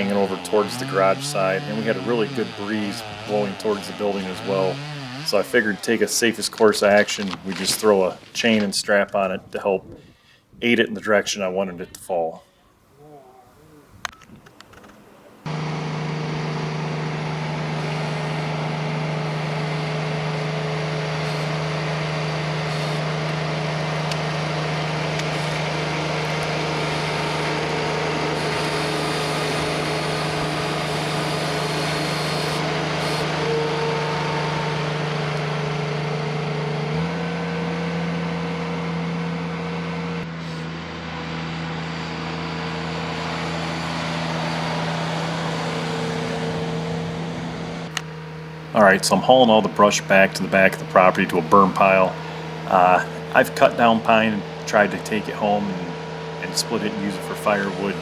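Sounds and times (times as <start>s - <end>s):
tractor engine running at high speed: 0.0s - 8.7s, 15.5s - 58.0s.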